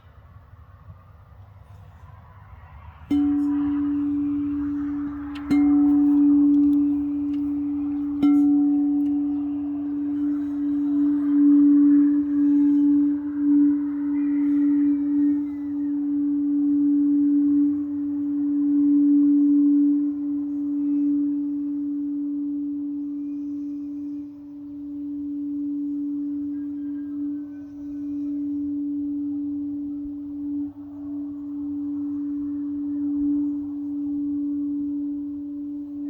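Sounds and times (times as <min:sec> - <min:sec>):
singing bowl sustained tone: 0:00.0 - 0:36.0.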